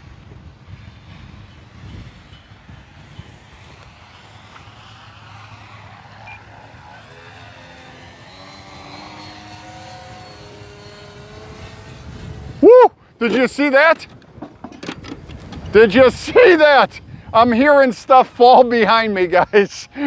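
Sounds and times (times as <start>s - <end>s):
wind on microphone: 0.0s - 8.1s, 9.7s - 18.4s
model plane electric motor whine: 2.2s - 13.3s.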